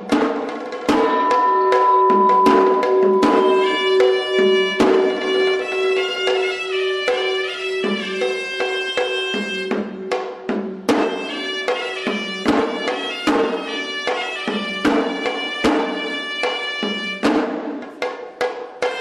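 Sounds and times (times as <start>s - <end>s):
sharp drum strokes: 0.0s - 19.0s
reedy shawm melody: 0.9s - 10.4s.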